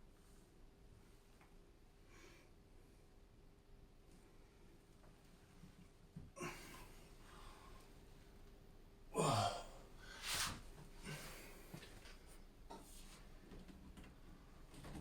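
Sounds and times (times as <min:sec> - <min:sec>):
person's short vocal sound: 0:09.2 - 0:09.8
faint breaths: 0:09.2 - 0:12.4.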